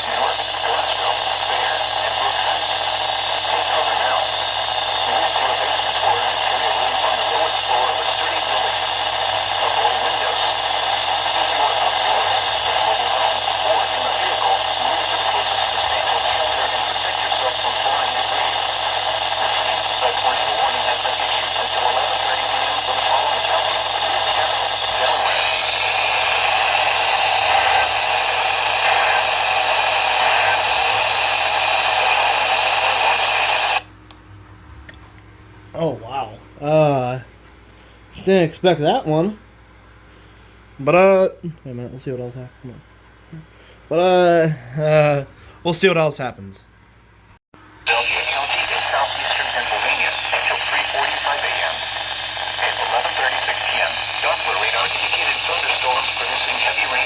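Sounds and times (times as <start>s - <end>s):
radio static hiss: 0.0s - 34.0s, 47.8s - 57.0s.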